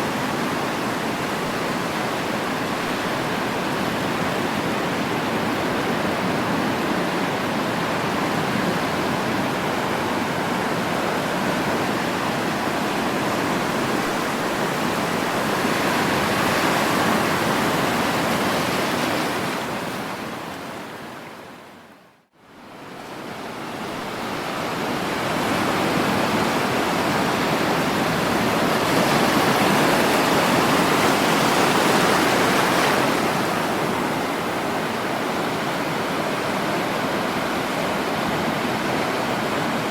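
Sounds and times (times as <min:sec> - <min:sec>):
waves washing onto shore: 0:00.0 - 0:21.9, 0:22.5 - 0:39.9.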